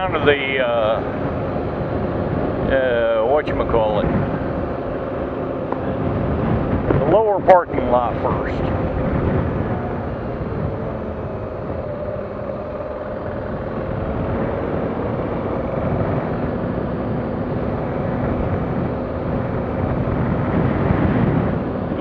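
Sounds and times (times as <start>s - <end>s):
road and wind noise: 0.0s - 22.0s
vehicle engine hum: 0.0s - 22.0s.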